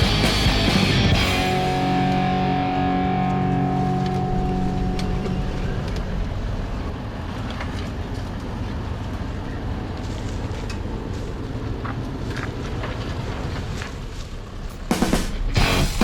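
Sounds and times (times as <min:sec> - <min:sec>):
guitar music: 0:00.0 - 0:06.9, 0:14.9 - 0:16.0
vehicle rumbling over dirt track: 0:00.0 - 0:15.7.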